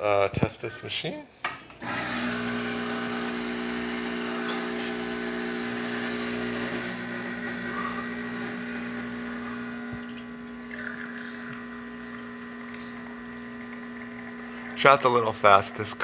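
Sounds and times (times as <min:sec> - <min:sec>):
espresso machine hiss: 0:01.8 - 0:14.8
espresso machine pump buzzing: 0:01.8 - 0:16.0.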